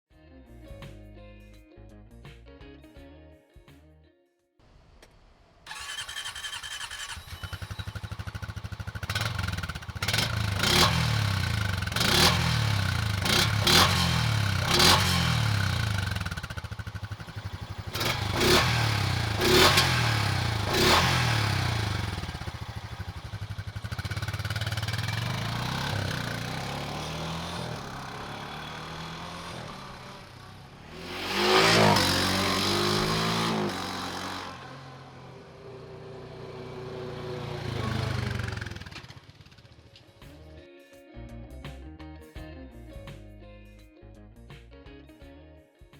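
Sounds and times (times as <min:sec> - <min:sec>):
engine idling and revving: 0:05.7 - 0:40.0.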